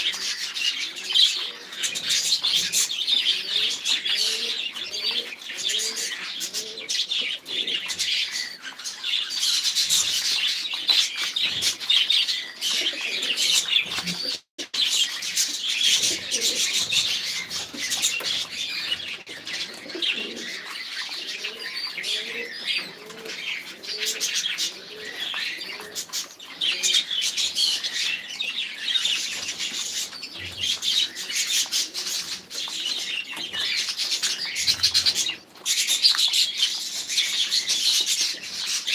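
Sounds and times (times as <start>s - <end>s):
pigeons cooing: 0.0s - 38.9s
small birds chirping: 0.0s - 38.9s.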